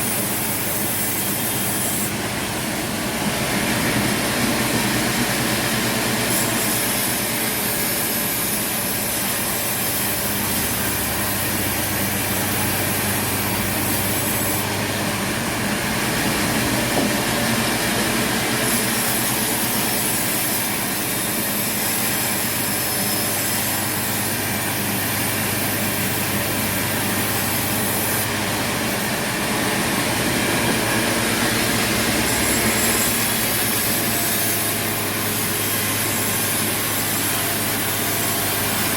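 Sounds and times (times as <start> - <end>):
saw cutting through wood: 0.0 - 38.9
machine hum: 8.8 - 19.8, 23.8 - 38.9.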